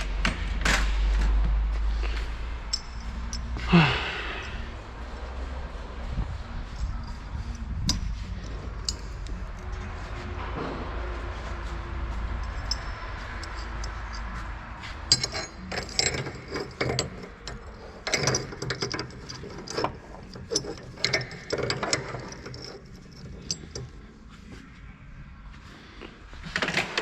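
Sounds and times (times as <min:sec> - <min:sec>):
low steady hum: 0:00.0 - 0:26.4
hand tools clanking on metal: 0:02.0 - 0:04.7, 0:12.1 - 0:24.1.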